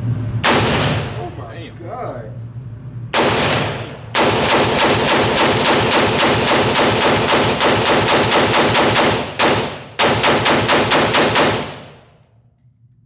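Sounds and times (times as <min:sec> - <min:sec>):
rifle rapid gunshots: 0:00.4 - 0:01.2, 0:03.2 - 0:12.0.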